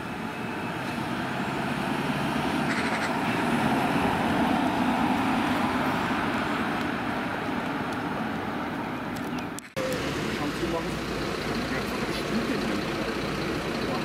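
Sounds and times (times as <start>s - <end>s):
vehicle driving past: 0.0s - 8.9s.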